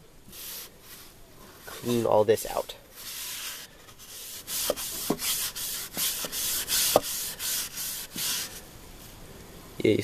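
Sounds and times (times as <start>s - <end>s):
wipe scrubbing wooden surface: 3.0s - 8.6s.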